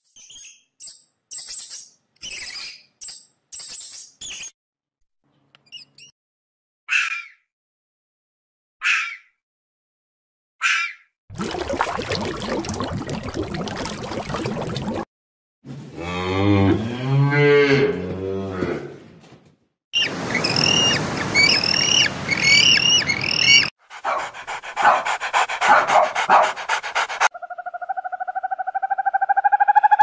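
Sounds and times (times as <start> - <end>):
cow mooing: 16.0 - 18.9.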